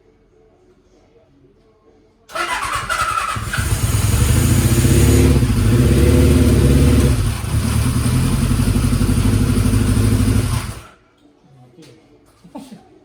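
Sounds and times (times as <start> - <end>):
motorcycle engine running: 2.4 - 10.9.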